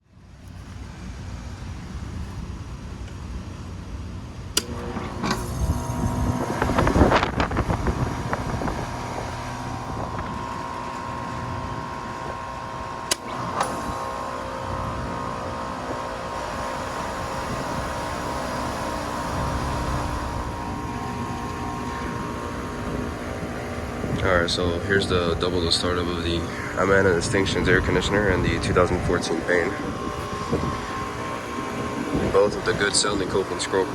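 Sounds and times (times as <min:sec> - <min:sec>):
air conditioner compressor humming: 0:00.0 - 0:33.9
compressor relay click: 0:04.5 - 0:24.3.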